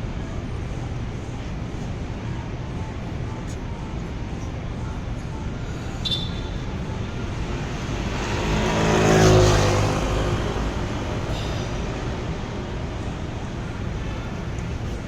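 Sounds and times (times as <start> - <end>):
steady traffic noise: 0.0 - 15.0
motor vehicle passing by: 7.0 - 15.0.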